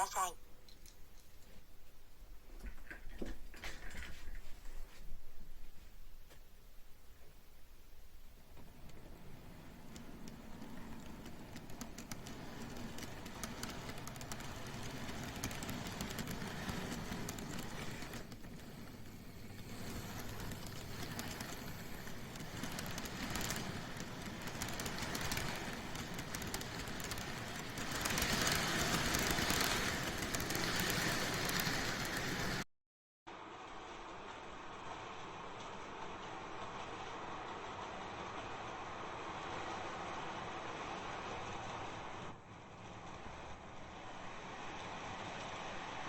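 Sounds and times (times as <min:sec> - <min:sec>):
wheels clicking over rail joints: 0:02.4 - 0:32.6, 0:33.3 - 0:46.0
model train motor whir: 0:08.6 - 0:32.6.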